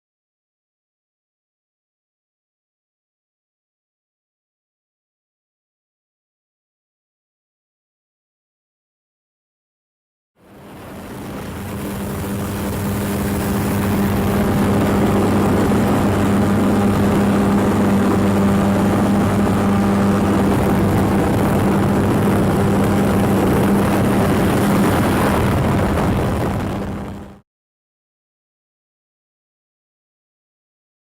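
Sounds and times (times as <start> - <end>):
propeller engine drone: 10.4 - 27.4.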